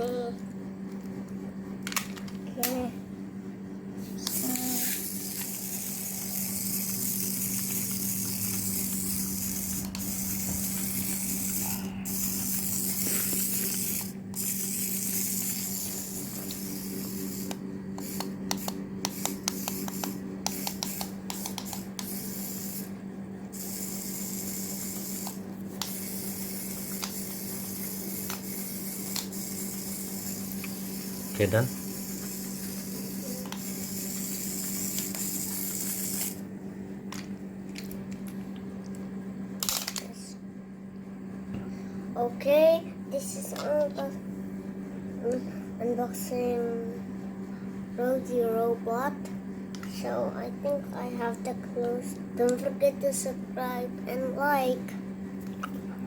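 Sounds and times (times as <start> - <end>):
steady hum: 0.0 - 56.0
toy robot motors whirring: 1.8 - 2.9, 4.1 - 36.4, 39.6 - 40.3, 42.4 - 44.1, 49.7 - 54.8.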